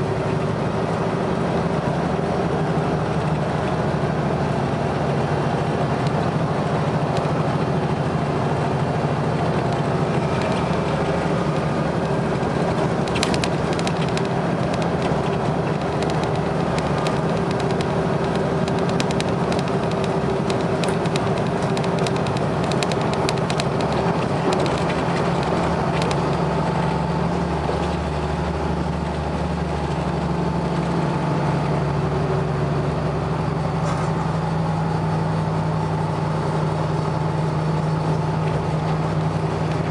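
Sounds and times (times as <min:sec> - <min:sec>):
diesel bus engine running: 0:00.0 - 0:39.9
sharp rattling clicks: 0:09.5 - 0:27.0.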